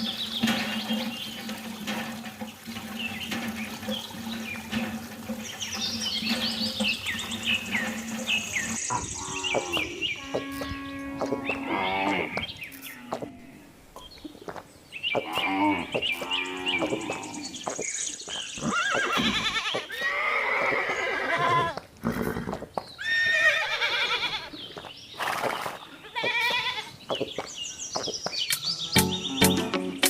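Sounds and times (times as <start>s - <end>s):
farm animal calls: 0.0s - 13.8s, 15.1s - 24.8s, 28.5s - 29.6s.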